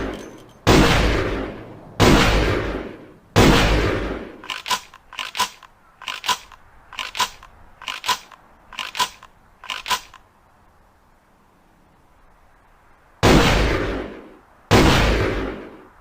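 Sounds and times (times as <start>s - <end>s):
gun mechanism metallic clicks: 0.0s - 0.7s, 4.4s - 10.2s
shotgun blast: 0.7s - 4.9s, 13.2s - 15.8s.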